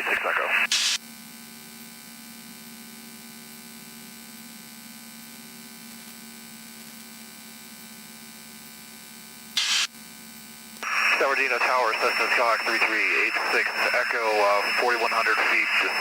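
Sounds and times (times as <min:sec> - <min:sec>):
electrical hum on radio feed: 0:00.0 - 0:01.0, 0:09.6 - 0:09.9, 0:10.8 - 0:16.0.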